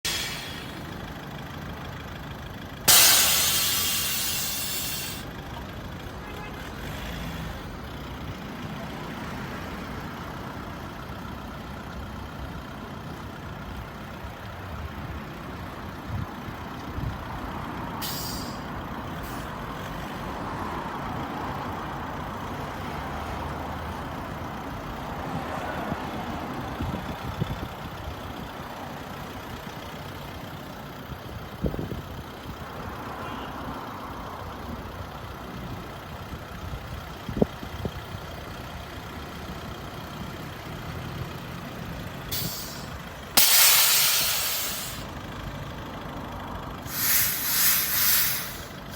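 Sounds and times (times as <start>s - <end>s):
vehicle noise: 0.0s - 48.9s
air suspension hiss: 0.1s - 0.8s, 2.8s - 5.3s, 18.0s - 19.5s, 42.3s - 45.2s, 46.8s - 48.9s.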